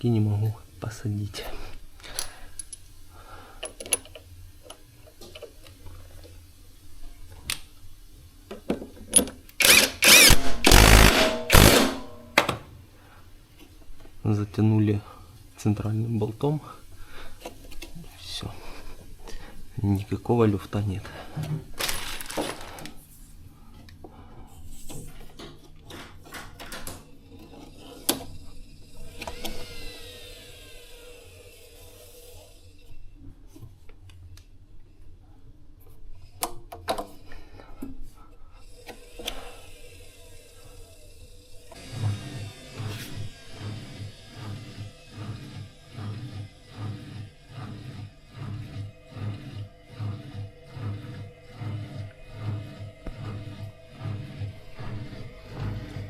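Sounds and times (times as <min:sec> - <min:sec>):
parts being handled clicks: 0:03.6 - 0:05.8
power driver whining: 0:09.6 - 0:12.5, 0:28.9 - 0:31.7, 0:41.6 - 0:56.0.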